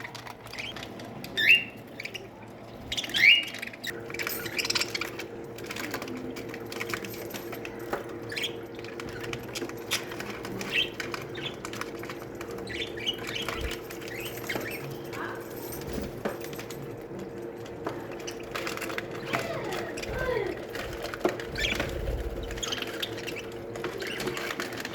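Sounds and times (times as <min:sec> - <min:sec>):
budgerigars chirping: 0:01.4 - 0:05.8, 0:21.6 - 0:24.7
wing flutters: 0:17.8 - 0:24.9.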